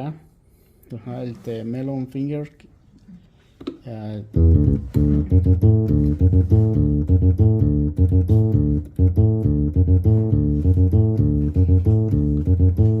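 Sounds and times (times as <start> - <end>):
keyboard electric bass line: 4.3 - 13.0.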